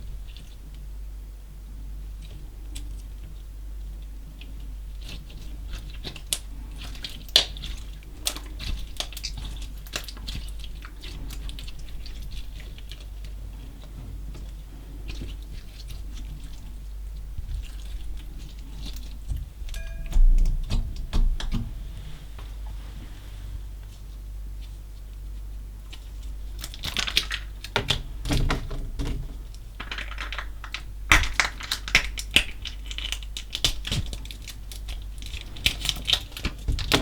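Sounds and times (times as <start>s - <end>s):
small clicks and crackles: 25.8s - 28.5s, 29.5s - 37.0s.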